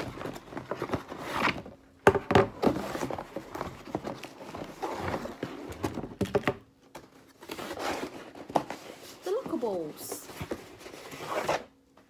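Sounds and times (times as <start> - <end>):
items knocking and clattering: 2.0 - 7.1.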